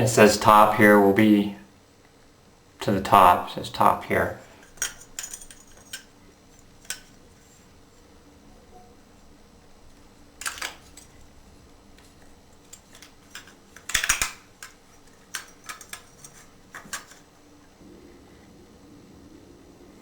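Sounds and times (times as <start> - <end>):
small metal and plastic parts clicking: 4.5 - 7.6, 10.4 - 11.3, 11.9 - 17.4.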